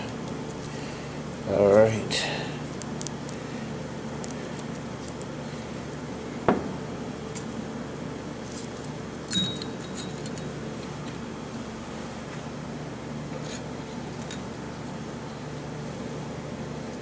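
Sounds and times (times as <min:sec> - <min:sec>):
ringing metallic clink: 0:09.3 - 0:10.1.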